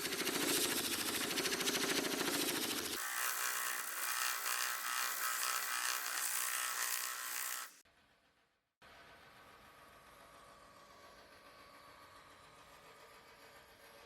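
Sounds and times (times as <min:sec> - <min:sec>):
buzzing power tool pulsing: 0:00.0 - 0:07.8
higher hissing power tool: 0:00.0 - 0:07.8.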